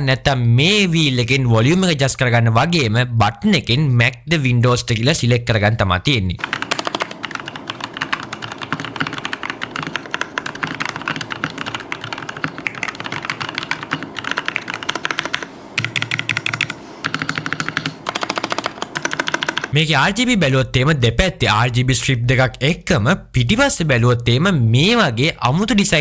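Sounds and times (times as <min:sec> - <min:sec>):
mechanical keyboard typing: 0:06.4 - 0:19.8.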